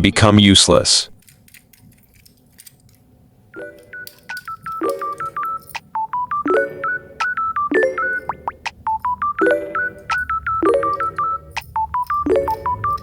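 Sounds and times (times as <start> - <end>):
short electronic beeping tune: 3.6 - 13.0.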